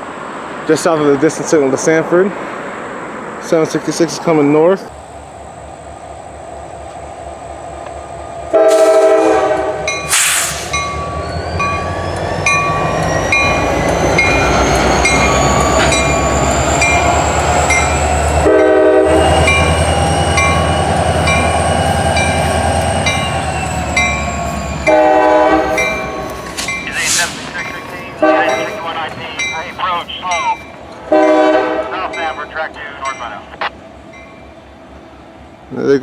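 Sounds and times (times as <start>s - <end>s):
locomotive engine rumbling: 3.6s - 35.7s
train air horn blasts: 8.5s - 10.8s, 18.4s - 28.9s, 31.1s - 32.1s
train wheel clicks: 25.6s - 31.0s.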